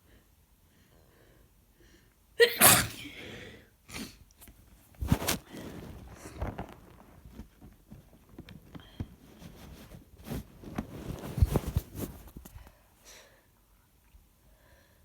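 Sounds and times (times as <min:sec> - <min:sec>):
woman sniffling and breathing: 0:02.4 - 0:04.3
rustling: 0:04.8 - 0:12.8.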